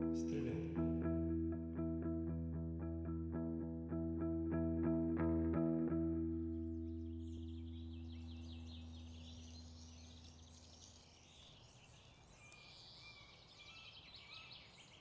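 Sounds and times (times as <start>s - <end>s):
distorted electric guitar chord: 0.0s - 9.3s
small birds chirping: 6.4s - 15.0s.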